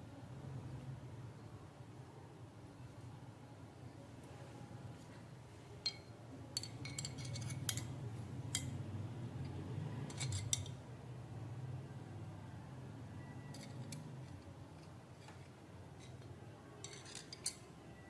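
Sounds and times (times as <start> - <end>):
faint low hum: 0.0 - 18.0
metal parts clicking and clinking: 5.9 - 8.7, 10.1 - 10.8, 13.5 - 17.7.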